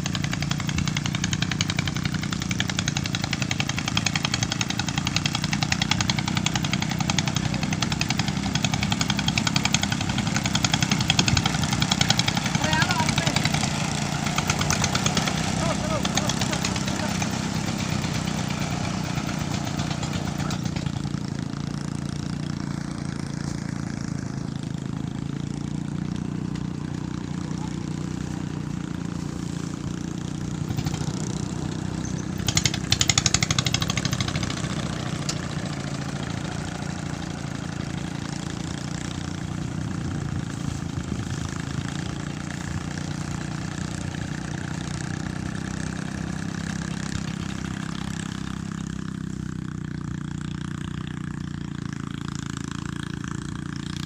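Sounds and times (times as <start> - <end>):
rapid clatter: 0.0 - 24.1, 25.0 - 44.8
threshing machine running: 0.0 - 48.4.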